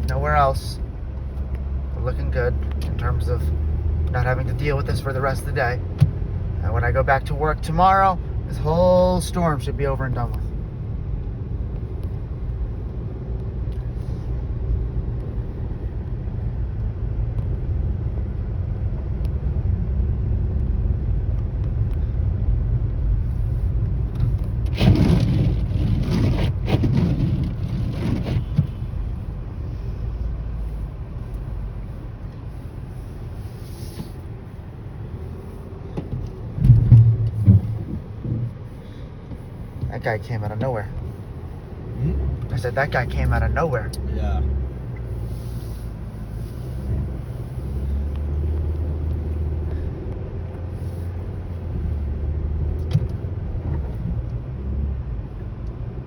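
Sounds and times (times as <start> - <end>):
car engine and tyre rumble: 0.0 - 56.0.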